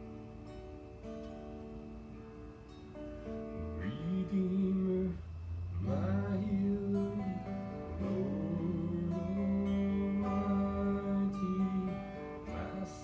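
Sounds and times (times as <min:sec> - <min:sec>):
strummed acoustic guitar: 0:00.0 - 0:13.0
person singing long notes: 0:03.8 - 0:13.0.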